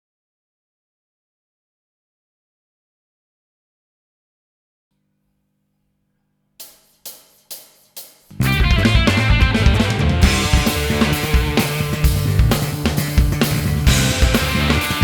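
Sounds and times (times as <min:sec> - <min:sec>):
rock band playing: 0:08.4 - 0:15.0.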